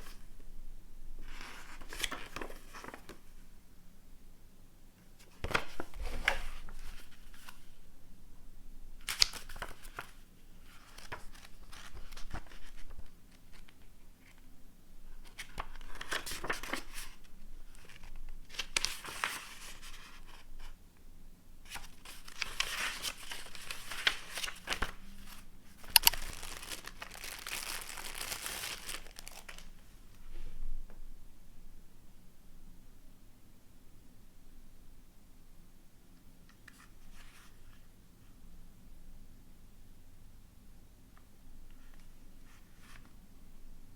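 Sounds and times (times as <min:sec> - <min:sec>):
plastic packaging crinkling: 0:21.8 - 0:29.8.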